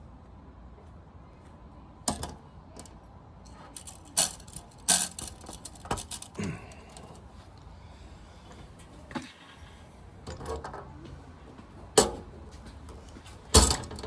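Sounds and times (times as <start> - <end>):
metal parts clinking: 3.7 - 7.2.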